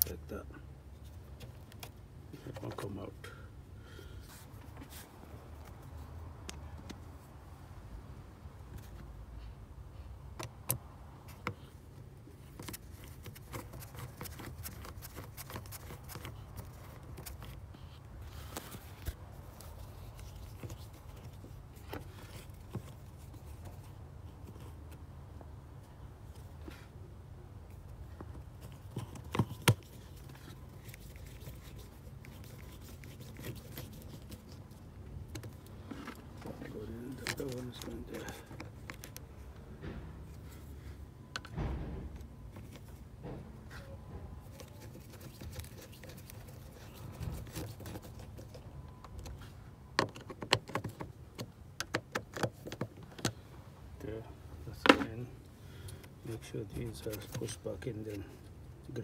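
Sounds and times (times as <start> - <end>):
hands handling plastic parts: 10.3 - 25.0, 27.6 - 43.2, 43.8 - 53.4, 54.7 - 59.0.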